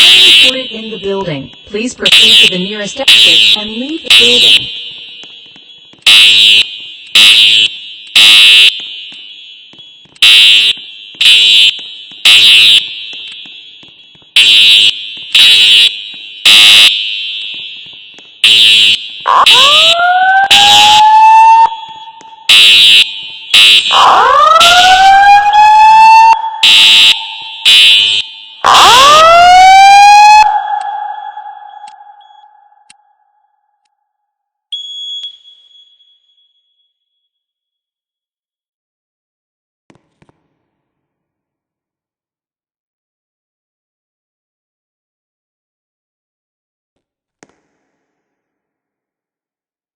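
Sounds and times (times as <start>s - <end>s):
fire alarm horn blasts: 0.0s - 33.2s, 34.7s - 36.6s.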